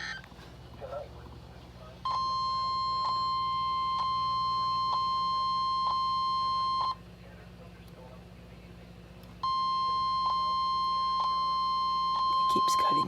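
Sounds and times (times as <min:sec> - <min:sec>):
steady high alarm beep: 0:02.0 - 0:07.0, 0:09.4 - 0:13.0.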